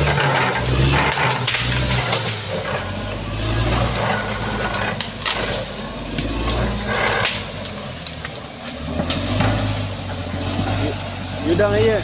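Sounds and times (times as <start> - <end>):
bulldozer diesel engine: 0.0 - 12.0.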